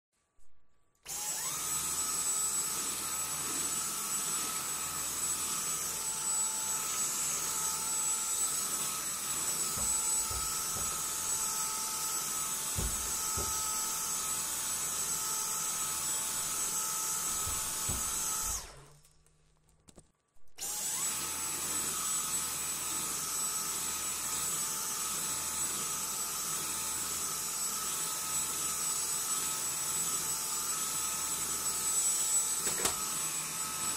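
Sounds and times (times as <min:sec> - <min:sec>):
vacuum cleaner motor whining: 0:01.0 - 0:19.0, 0:20.6 - 0:33.9
low knocks: 0:12.8 - 0:13.7.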